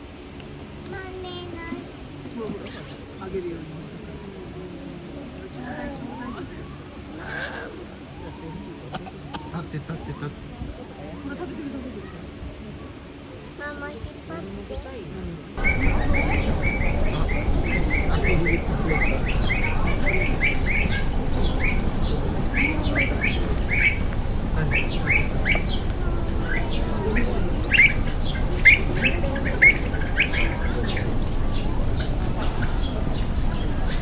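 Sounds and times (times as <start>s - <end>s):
low background rumble: 0.0s - 34.0s
birds chirping: 2.0s - 3.4s, 15.6s - 34.0s.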